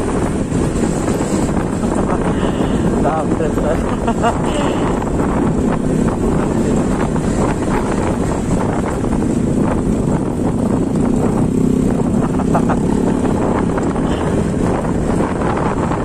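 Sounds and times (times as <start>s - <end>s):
wind on microphone: 0.0s - 16.0s
scooter engine running: 3.8s - 16.0s.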